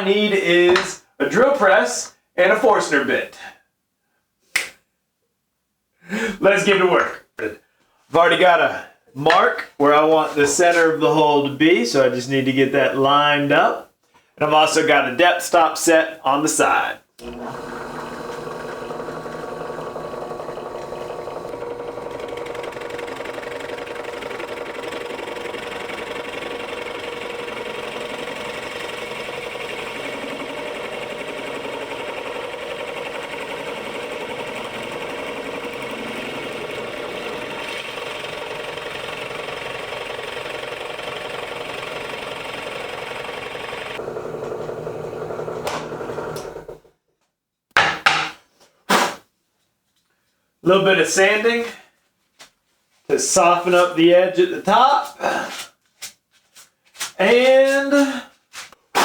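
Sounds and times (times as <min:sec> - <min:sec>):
drill press boring into plywood: 0:17.2 - 0:46.9.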